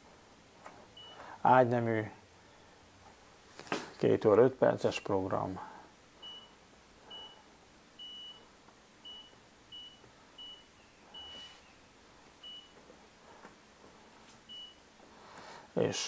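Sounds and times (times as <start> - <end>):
washing machine short high beeps: 8.0 - 8.4.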